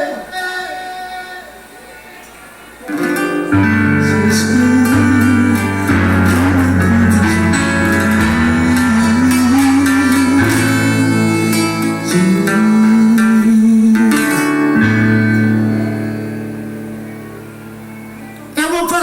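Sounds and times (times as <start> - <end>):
plucked-string melody: 2.9 - 19.0
sustained chords: 3.1 - 18.6
steady percussion strokes: 3.2 - 12.8.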